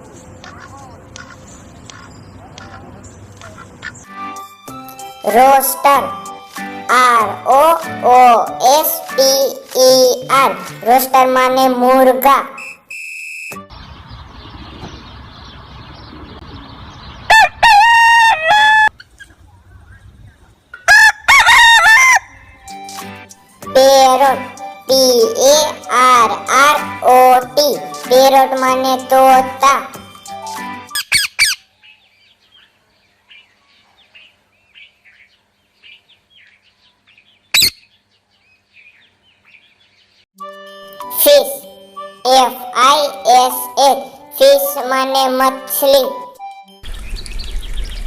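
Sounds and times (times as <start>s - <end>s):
rooster crowing: 17.3s - 18.9s, 20.9s - 22.6s
parrot squawk: 30.9s - 31.7s, 37.5s - 37.9s
parrot chattering: 37.6s - 37.8s.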